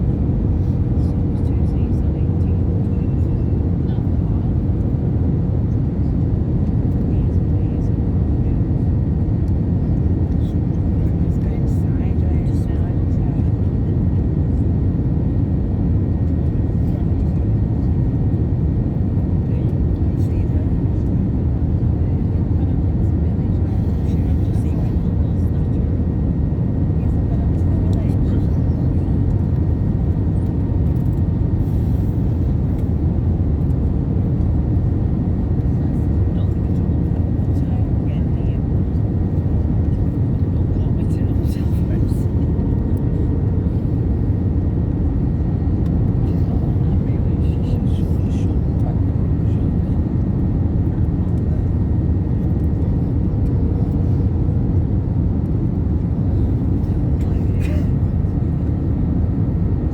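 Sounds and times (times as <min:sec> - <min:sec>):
airliner cabin engine rumble: 0:00.0 - 0:59.9.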